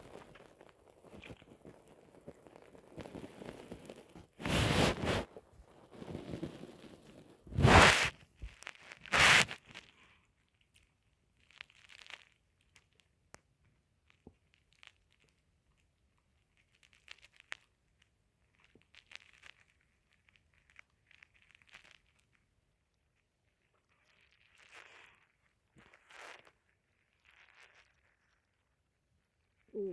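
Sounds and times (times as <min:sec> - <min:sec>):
rustling and scraping: 0:00.0 - 0:10.0.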